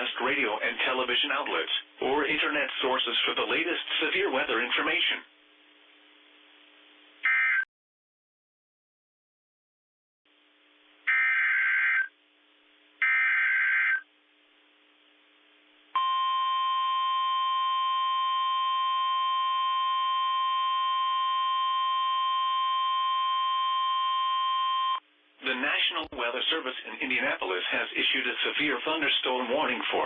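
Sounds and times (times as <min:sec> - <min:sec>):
steady warning alarm tone: 0:13.0 - 0:14.0, 0:16.0 - 0:25.0.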